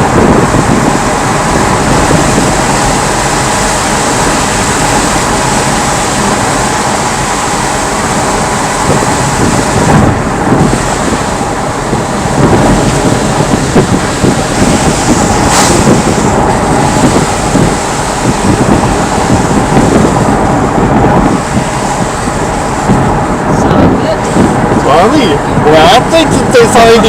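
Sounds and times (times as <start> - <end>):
tyres on wet road: 0.0 - 27.0
wind and rain on car body: 0.0 - 27.0.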